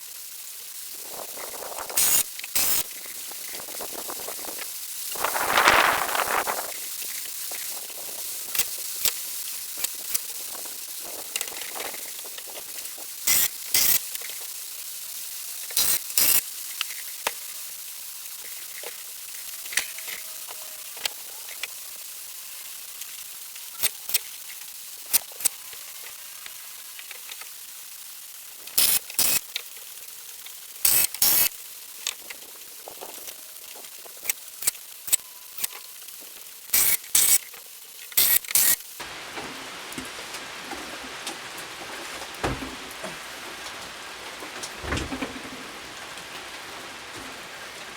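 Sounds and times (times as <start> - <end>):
light rain hissing: 0.0 - 47.9
wood and tools knocking: 39.4 - 43.8, 44.4 - 45.8.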